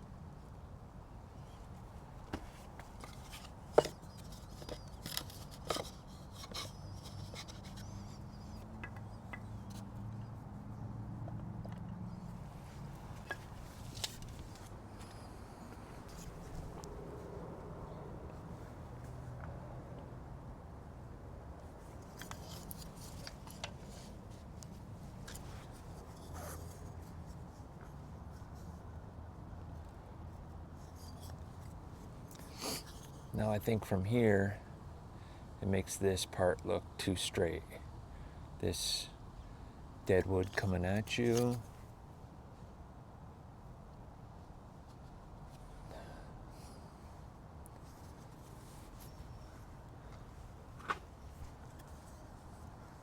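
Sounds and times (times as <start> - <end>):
low steady hum: 0.0 - 32.4
potted plant knocks and scrapes: 2.3 - 8.2
branches clicking and rubbing: 11.8 - 17.1.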